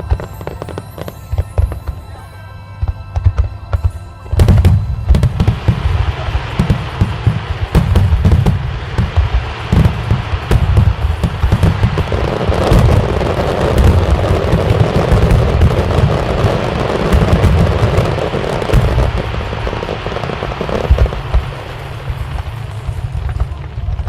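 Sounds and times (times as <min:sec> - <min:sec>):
fireworks crackling: 0:00.0 - 0:24.0
fireworks booming: 0:02.8 - 0:24.0.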